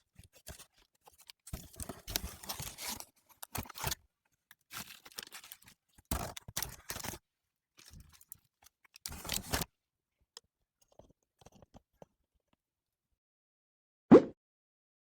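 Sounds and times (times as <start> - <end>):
packaging rustling and crinkling: 0.0 - 7.2, 7.8 - 9.7.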